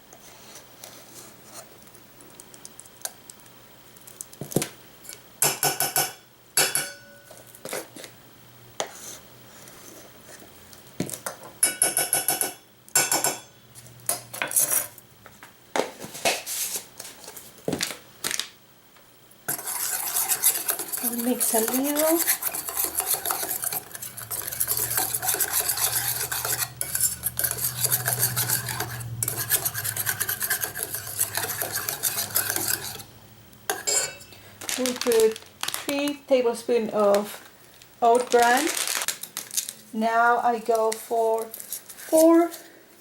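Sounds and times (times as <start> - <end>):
stirring in a bowl: 19.5 - 35.3, 40.6 - 42.7
metal spoon clinking against bowl: 33.7 - 34.4.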